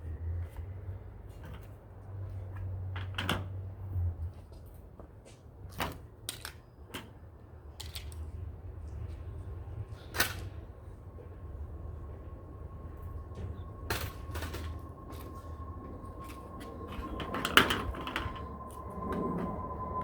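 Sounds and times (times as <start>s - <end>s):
steady low hum: 8.3s - 20.0s.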